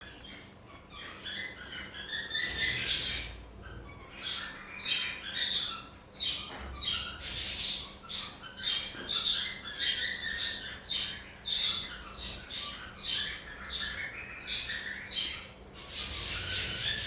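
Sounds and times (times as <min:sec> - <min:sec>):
parrot squawking and chirping: 0:08.2 - 0:17.0.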